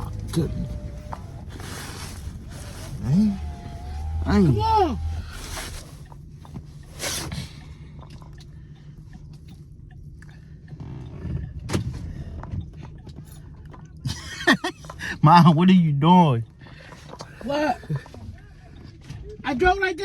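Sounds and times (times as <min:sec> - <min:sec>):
voice: 0:00.0 - 0:01.2, 0:02.8 - 0:05.3, 0:14.4 - 0:16.4, 0:17.4 - 0:18.7, 0:19.3 - 0:20.0
rustles: 0:00.0 - 0:06.2
car hum: 0:00.0 - 0:07.4.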